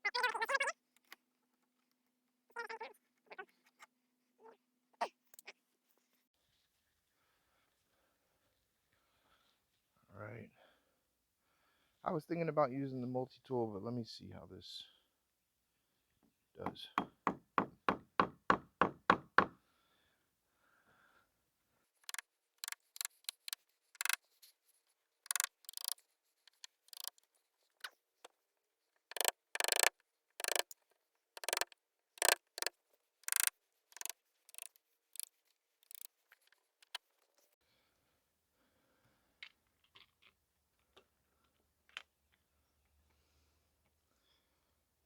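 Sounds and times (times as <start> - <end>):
hand tool tapping wood: 16.6 - 19.6, 29.1 - 30.7, 31.4 - 35.3
hand tool scraping wood: 25.3 - 27.2, 29.1 - 30.7, 31.4 - 35.3.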